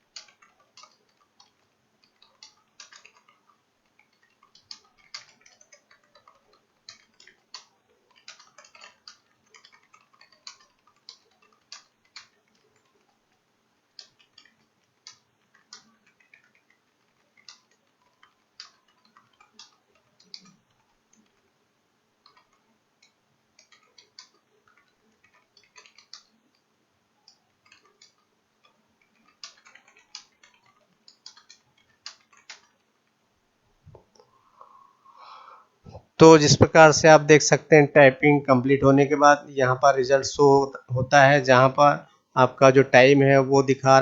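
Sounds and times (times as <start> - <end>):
keyboard typing clicks: 0.0 - 21.6, 22.2 - 33.2.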